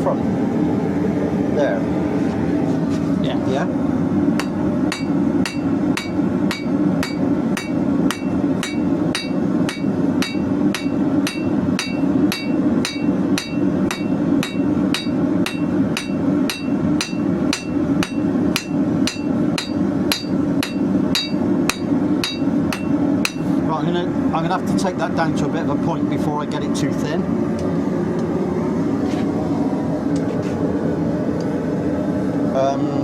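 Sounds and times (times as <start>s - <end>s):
steady low drone: 0.0s - 33.0s
hammer blows on hot steel: 4.4s - 23.7s.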